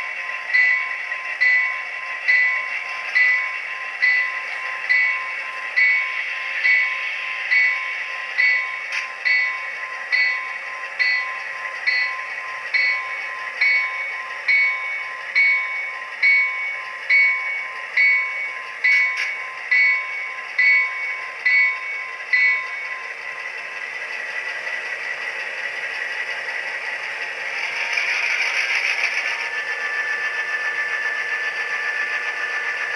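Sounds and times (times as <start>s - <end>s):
locomotive bell ringing: 0.0s - 23.2s.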